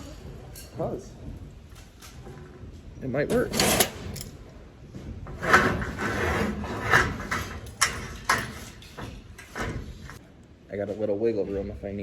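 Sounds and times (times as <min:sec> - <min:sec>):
metal scraping on metal: 0:03.3 - 0:04.4, 0:05.3 - 0:10.2.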